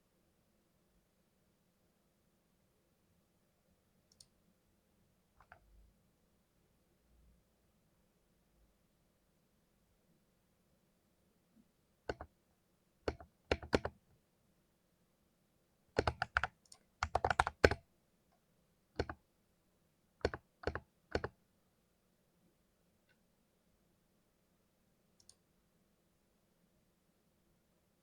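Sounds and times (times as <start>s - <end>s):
keyboard typing: 5.4s - 5.7s, 12.1s - 12.3s, 13.1s - 14.0s, 16.0s - 17.8s, 19.0s - 19.2s, 20.2s - 21.4s.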